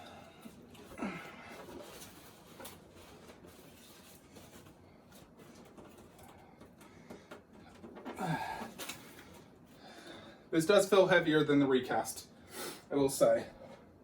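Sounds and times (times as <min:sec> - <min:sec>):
packaging rustling: 0:00.4 - 0:06.9.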